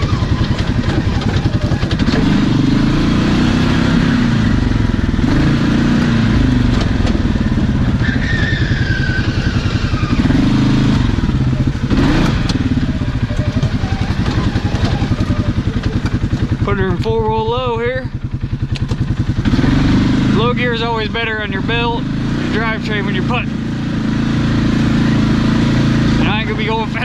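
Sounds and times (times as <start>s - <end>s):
clatter over rough ground: 0.0s - 2.7s, 5.8s - 10.2s, 11.4s - 19.6s
off-road vehicle engine revving: 0.0s - 27.0s.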